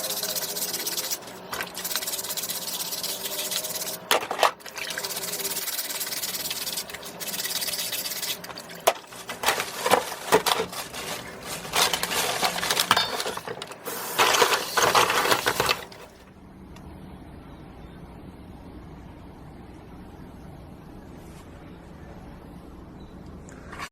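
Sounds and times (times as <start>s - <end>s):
scratchy rubbing on shells: 0.0s - 4.1s, 5.0s - 13.0s
faint low hum: 0.0s - 23.9s.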